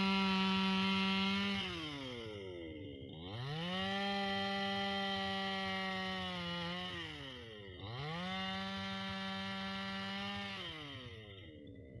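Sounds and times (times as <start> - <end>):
chainsaw engine revving: 0.0 - 11.9.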